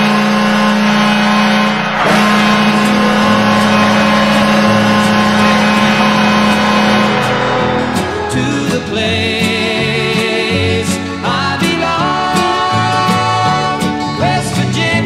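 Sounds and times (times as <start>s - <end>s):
goal horn blast: 1.0s - 10.1s.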